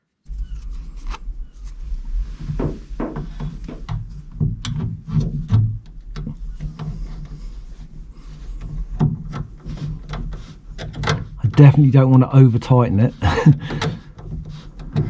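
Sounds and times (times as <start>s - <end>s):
low hum: 0.3s - 9.0s
plastic rubbing on metal: 0.3s - 15.0s
plastic clicks and knocks: 2.6s - 7.0s, 13.5s - 15.0s.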